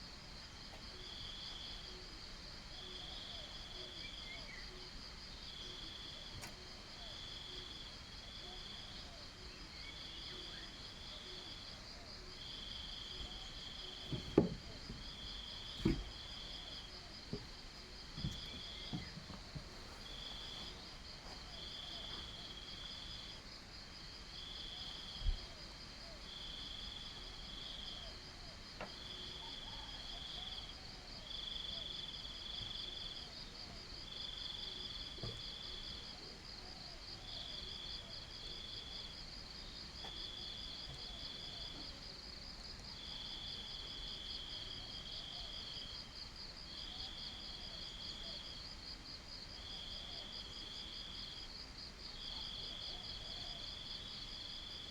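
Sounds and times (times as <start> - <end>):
short thump: 14.0 - 16.4, 17.3 - 17.5, 18.2 - 22.4.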